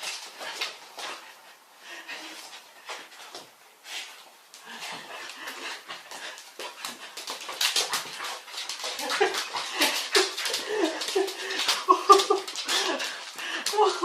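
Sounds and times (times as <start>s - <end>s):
patter of clicks and scuffles: 2.2s - 14.0s.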